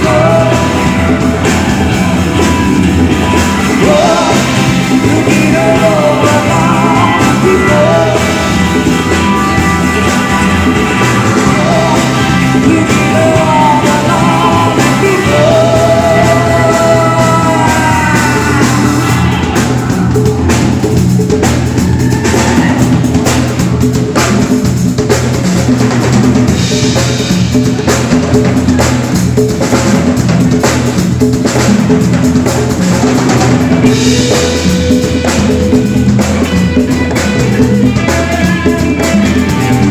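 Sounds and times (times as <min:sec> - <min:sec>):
person singing: 0:00.0 - 0:23.8, 0:33.6 - 0:39.9
drum kit: 0:00.0 - 0:39.9
rock band playing: 0:00.0 - 0:39.9.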